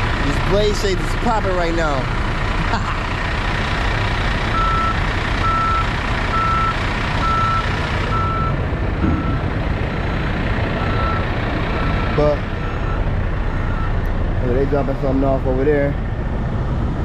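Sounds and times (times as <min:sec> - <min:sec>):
truck engine rumbling: 0:00.0 - 0:17.0
backup alarm beeping: 0:04.6 - 0:09.4, 0:10.8 - 0:11.2, 0:11.8 - 0:14.0.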